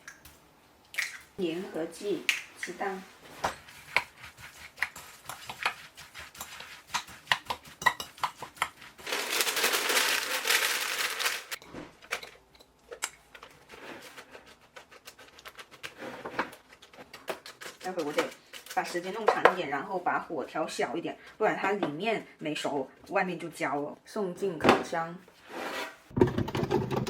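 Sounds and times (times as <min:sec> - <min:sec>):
spoon scraping a bowl: 0:03.4 - 0:08.9
crackling and rustling: 0:08.2 - 0:12.2.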